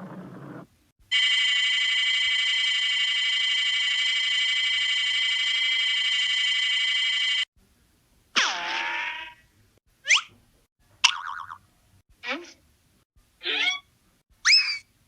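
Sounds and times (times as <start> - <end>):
alarm bell ringing: 1.1 - 7.5.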